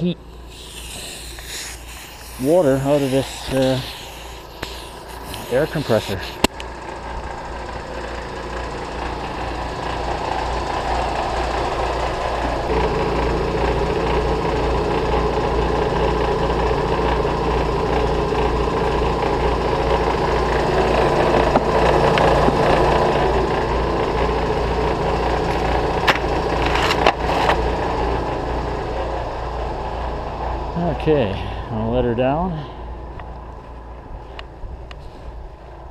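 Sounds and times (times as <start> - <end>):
air compressor running: 0.0 - 30.8.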